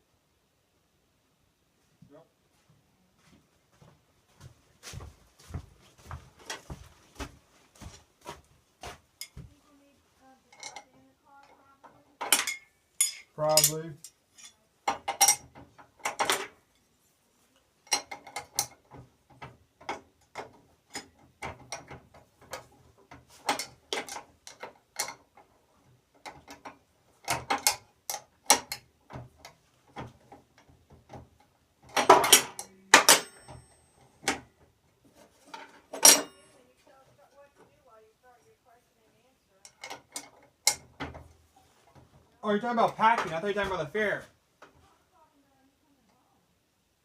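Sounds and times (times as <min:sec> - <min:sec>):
hand tools clinking on metal: 0:10.5 - 0:11.0, 0:11.8 - 0:16.9, 0:17.8 - 0:25.6, 0:26.2 - 0:29.6, 0:31.8 - 0:34.6, 0:35.3 - 0:36.8, 0:39.6 - 0:41.2.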